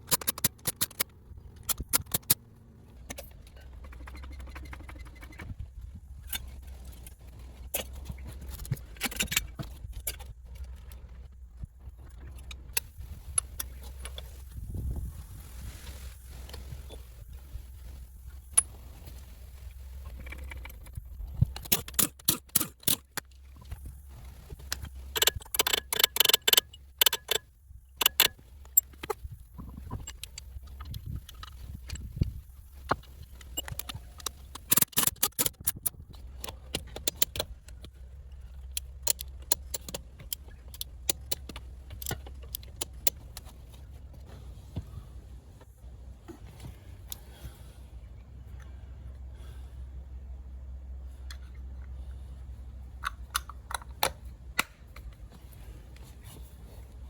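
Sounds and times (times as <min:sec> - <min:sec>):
steady low hum: 0:01.0 - 0:57.0.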